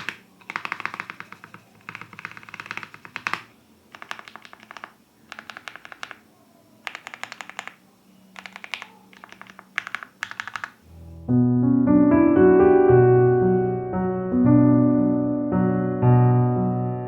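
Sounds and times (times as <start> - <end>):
mechanical keyboard typing: 0.0 - 10.8
piano music: 10.9 - 17.0.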